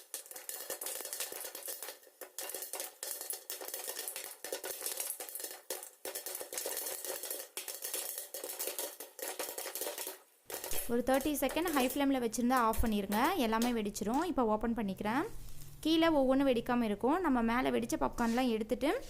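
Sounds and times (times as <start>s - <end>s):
popcorn popping under a lid: 0.0s - 14.4s.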